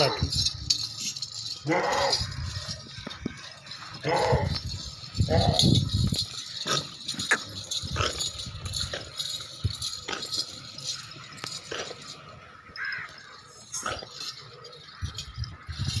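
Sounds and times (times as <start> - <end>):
animals knocking and rattling: 0.0 - 16.0.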